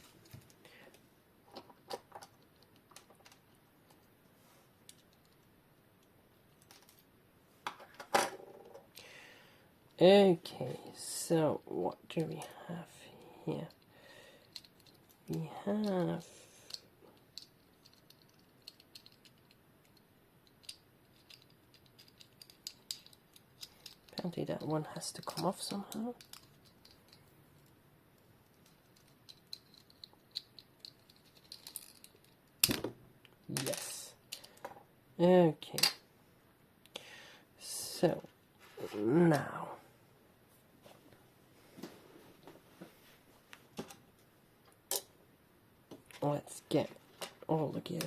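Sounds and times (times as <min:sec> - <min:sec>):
small plastic parts clicking: 0:00.2 - 0:04.1, 0:04.8 - 0:07.0, 0:13.6 - 0:27.8, 0:28.4 - 0:33.7, 0:34.3 - 0:34.7.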